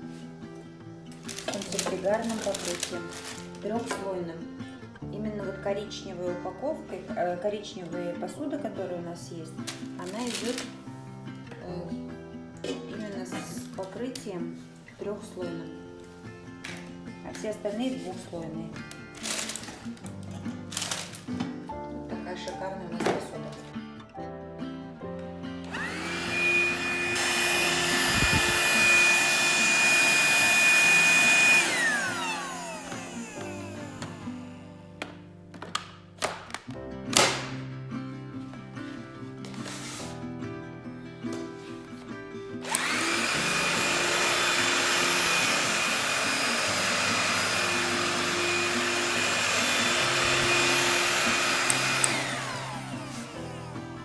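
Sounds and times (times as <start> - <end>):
vacuum cleaner motor whining: 25.6 - 35.1, 42.6 - 54.0.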